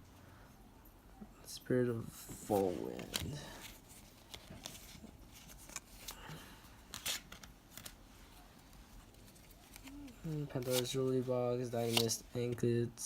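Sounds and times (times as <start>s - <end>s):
trading cards rustling and sliding: 2.2s - 12.7s.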